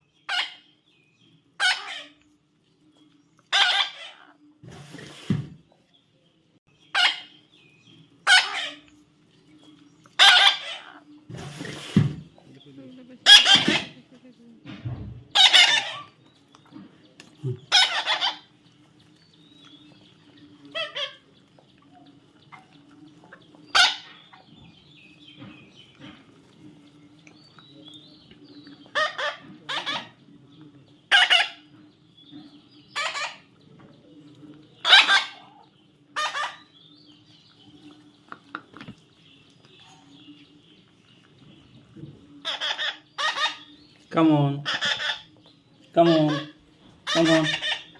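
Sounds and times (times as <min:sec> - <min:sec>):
parrot squawking: 0:00.3 - 0:00.7, 0:01.6 - 0:02.2, 0:03.5 - 0:04.4, 0:06.9 - 0:07.4, 0:08.2 - 0:08.9, 0:10.2 - 0:11.0, 0:13.2 - 0:14.0, 0:15.3 - 0:16.2, 0:17.7 - 0:18.5, 0:20.7 - 0:21.2, 0:23.7 - 0:24.4, 0:28.9 - 0:30.2, 0:31.1 - 0:31.7, 0:32.9 - 0:33.5, 0:34.8 - 0:35.6, 0:36.2 - 0:36.7, 0:42.4 - 0:43.8, 0:44.6 - 0:45.3, 0:46.0 - 0:47.9.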